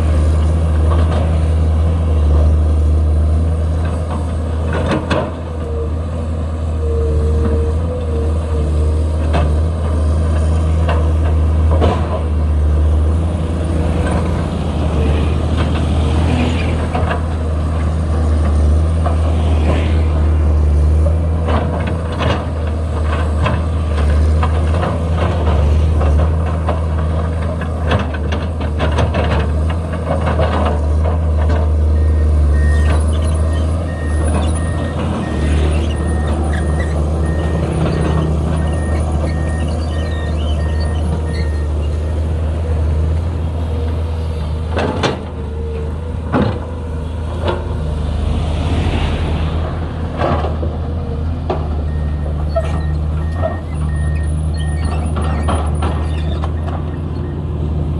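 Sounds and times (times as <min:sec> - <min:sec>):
diesel excavator engine: 0:00.0 - 0:57.9
reversing alarm beeping: 0:32.0 - 0:41.8, 0:51.9 - 0:55.0
clanks and scrapes: 0:54.5 - 0:57.1.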